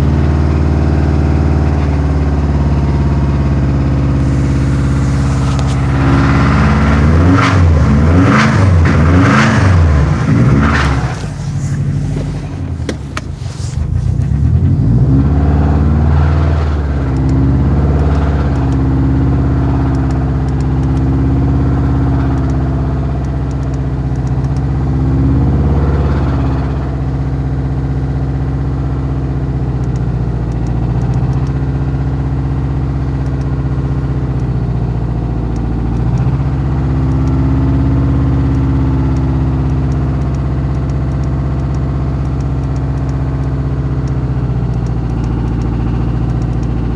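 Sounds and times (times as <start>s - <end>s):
engine throttle blips: 0.0s - 15.5s, 35.5s - 46.9s
car engine running: 0.0s - 16.0s, 30.2s - 46.9s.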